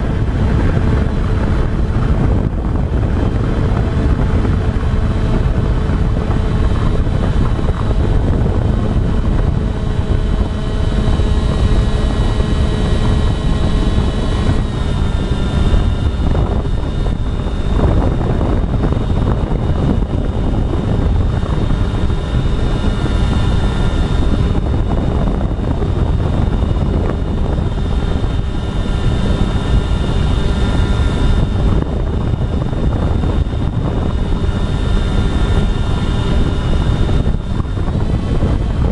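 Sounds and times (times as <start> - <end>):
heavy low rumble: 0.0 - 38.9
model aircraft motors whining: 0.0 - 38.9.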